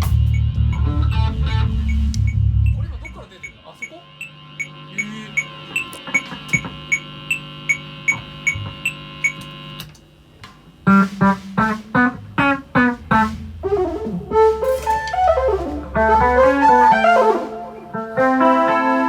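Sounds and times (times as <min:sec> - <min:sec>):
electric bass: 0:00.0 - 0:03.1, 0:10.9 - 0:19.0
band playing: 0:11.0 - 0:19.0
held keyboard chord: 0:11.7 - 0:19.0.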